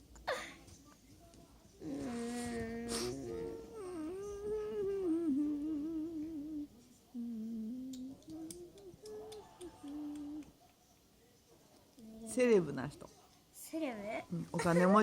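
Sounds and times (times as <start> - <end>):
child humming: 1.8 - 10.5.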